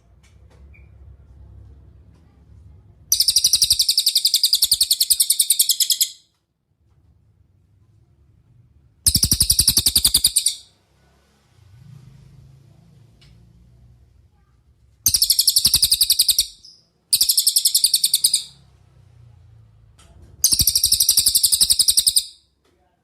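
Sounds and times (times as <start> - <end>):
faint low hum: 0.0 - 5.8, 6.6 - 23.0
songbird trilling: 3.1 - 6.2, 9.1 - 10.7, 15.1 - 18.6, 20.4 - 22.4.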